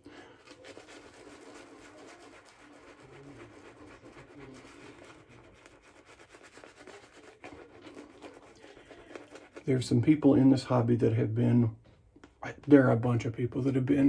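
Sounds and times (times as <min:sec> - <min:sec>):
razor scraping stubble: 0:00.4 - 0:09.8.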